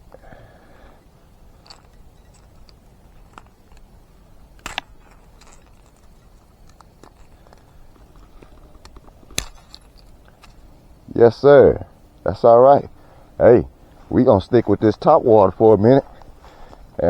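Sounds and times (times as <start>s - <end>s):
fishing tackle clicking and rattling: 1.5s - 10.7s.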